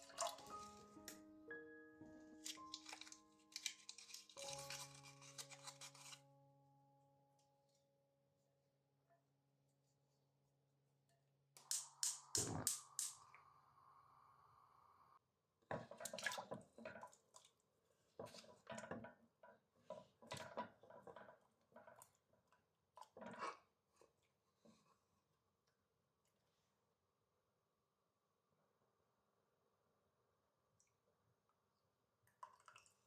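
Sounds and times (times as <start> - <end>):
water running: 0.0 - 1.1
utensils and dishes clinking: 2.4 - 6.2
sharp clicks: 11.6 - 13.3.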